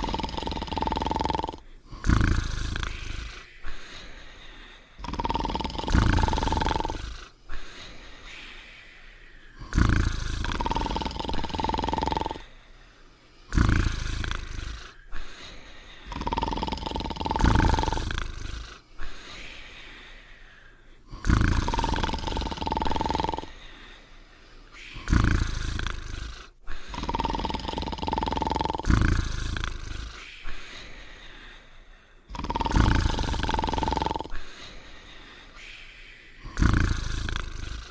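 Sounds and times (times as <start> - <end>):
cartoon dog snoring: 0.0 - 4.2, 5.0 - 7.9, 9.5 - 12.5, 13.5 - 19.5, 21.1 - 23.8, 24.8 - 31.0, 32.3 - 34.8, 36.4 - 37.9
quiet breathing: 0.0 - 37.9.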